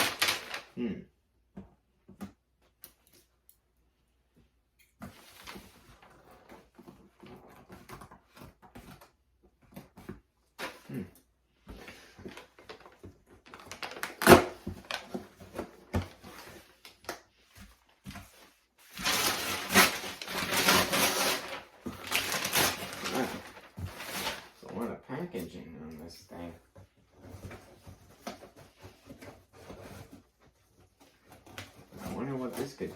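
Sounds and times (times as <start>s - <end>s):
cardboard packaging clicks and crackles: 0.0s - 0.7s, 11.8s - 24.7s
packaging rustling: 0.0s - 0.7s, 11.8s - 24.8s.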